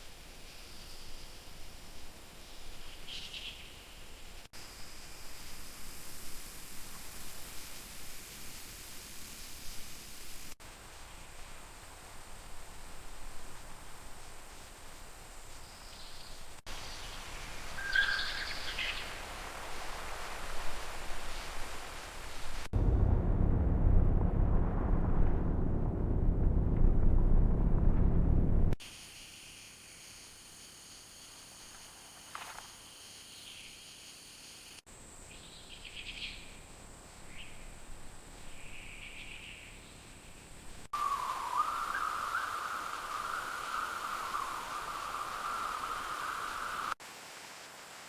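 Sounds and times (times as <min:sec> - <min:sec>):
steady background hiss: 0:00.0 - 0:22.7, 0:28.8 - 0:48.0
birds chirping: 0:15.7 - 0:19.2, 0:41.0 - 0:47.0
high insect drone: 0:28.9 - 0:40.4, 0:41.0 - 0:47.0.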